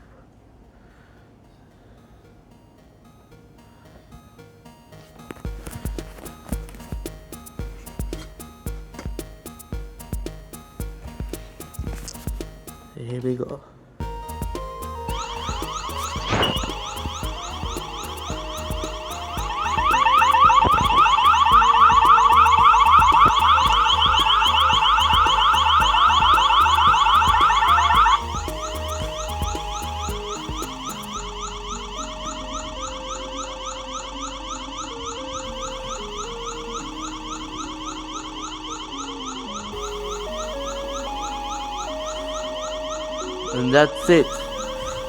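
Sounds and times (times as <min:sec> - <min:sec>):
electronic siren yelping: 0:14.0 - 0:45.0.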